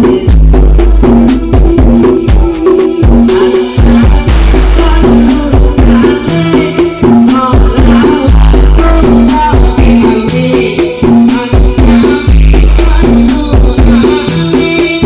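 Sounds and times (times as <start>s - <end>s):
heavy bass hits: 0.0s - 10.3s
loud dance music: 0.0s - 15.0s
rattling tambourine-like percussion: 0.0s - 15.0s.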